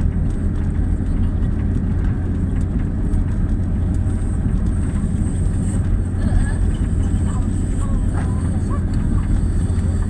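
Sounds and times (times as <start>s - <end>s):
engine rumbling steadily: 0.0s - 10.0s.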